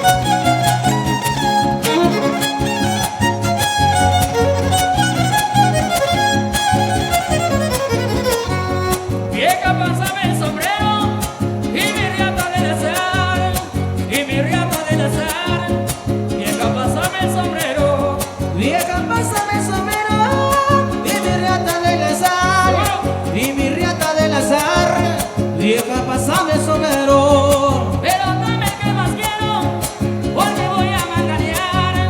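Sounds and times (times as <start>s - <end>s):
violin melody: 0.0s - 9.5s
strummed guitars: 0.0s - 32.0s.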